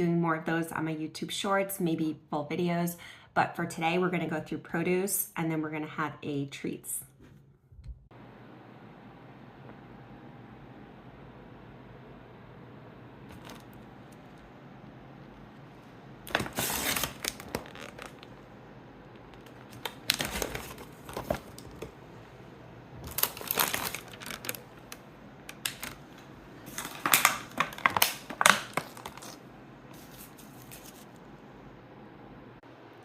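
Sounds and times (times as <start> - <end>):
plastic packaging crinkling: 13.3 - 14.4, 16.2 - 22.0, 23.0 - 31.1.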